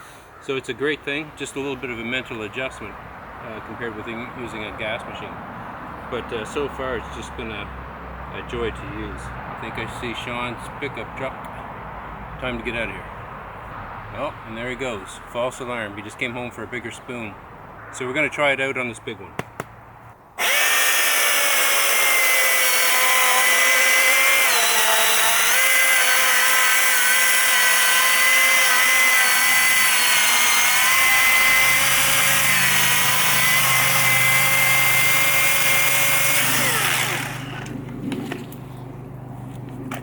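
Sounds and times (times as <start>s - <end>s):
electric chainsaw whining: 20.4s - 38.4s.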